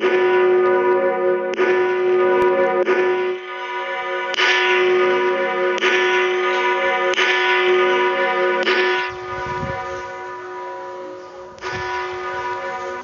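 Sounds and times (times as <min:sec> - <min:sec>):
church bells ringing: 0:00.0 - 0:13.0.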